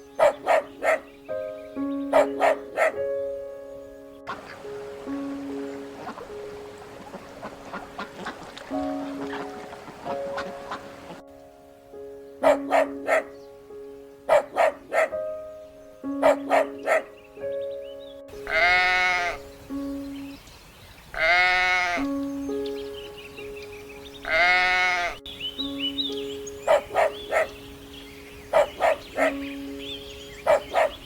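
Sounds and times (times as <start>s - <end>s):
music of held notes: 0.0s - 31.0s
sheep or goat bleating: 18.5s - 19.4s, 21.2s - 22.0s, 24.3s - 25.2s.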